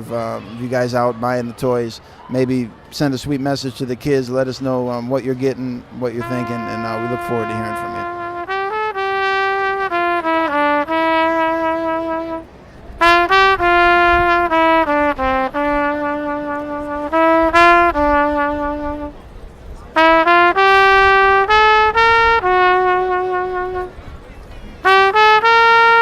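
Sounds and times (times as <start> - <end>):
solo trumpet slow melody: 6.2 - 19.2, 20.0 - 24.0, 24.8 - 26.0.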